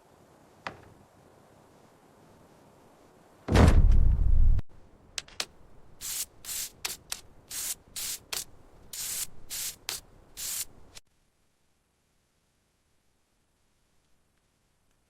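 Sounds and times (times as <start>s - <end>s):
hissing rubbing strokes: 6.0s - 11.0s.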